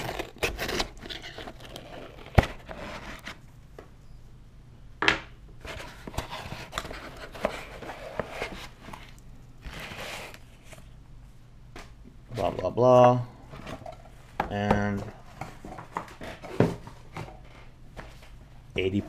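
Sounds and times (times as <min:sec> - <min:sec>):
packaging rustling and scraping: 0:00.0 - 0:03.5, 0:05.6 - 0:11.0.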